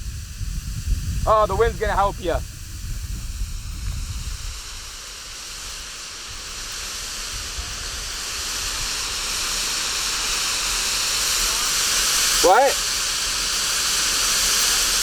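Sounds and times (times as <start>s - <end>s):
wind rumble on microphone: 0.0s - 5.0s
firework hissing: 0.0s - 15.0s.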